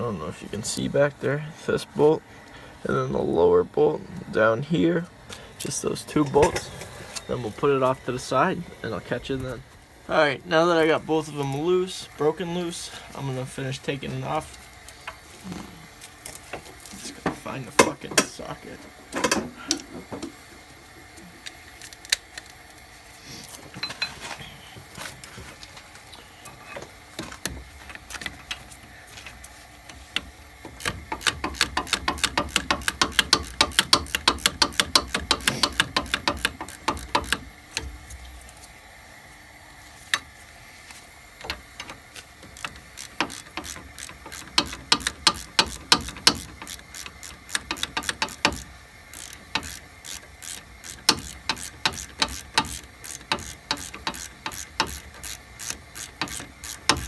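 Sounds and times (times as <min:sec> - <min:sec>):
tools clinking: 0:05.6 - 0:07.7, 0:23.8 - 0:24.5, 0:26.4 - 0:38.0, 0:41.4 - 0:57.0
socket ratchet clicking: 0:30.1 - 0:38.0, 0:41.4 - 0:57.0.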